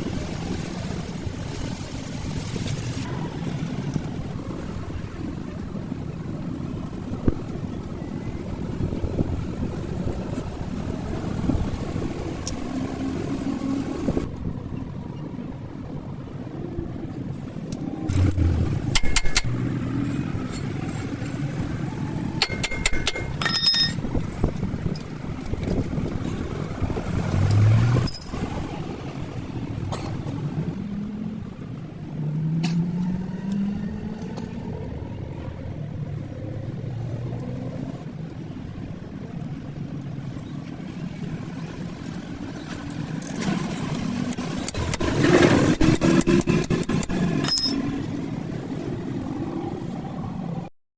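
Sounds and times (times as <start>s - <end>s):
car engine droning: 0.0s - 50.7s
sharp metallic clicks: 17.7s - 19.6s, 22.4s - 24.0s.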